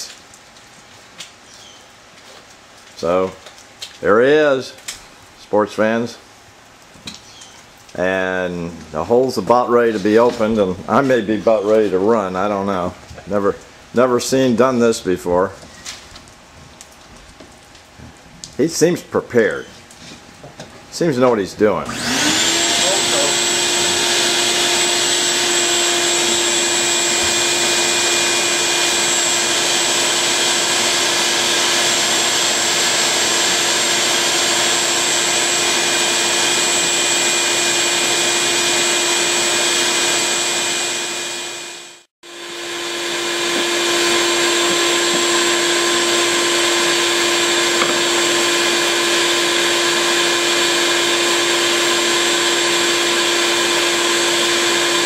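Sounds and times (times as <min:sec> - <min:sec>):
vacuum motor humming and whining: 0:21.8 - 0:55.0.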